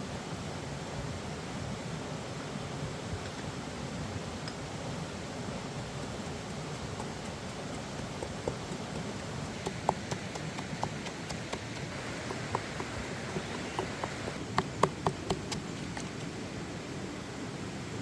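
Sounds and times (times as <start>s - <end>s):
stream flowing: 0.0s - 18.0s
sharp clicks and taps: 6.7s - 16.3s.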